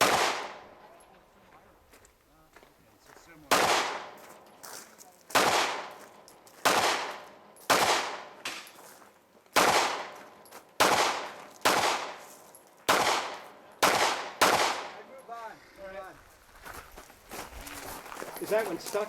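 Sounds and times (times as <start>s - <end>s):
gunshots echoing: 0.0s - 0.9s, 3.4s - 4.4s, 5.3s - 8.8s, 9.5s - 15.2s.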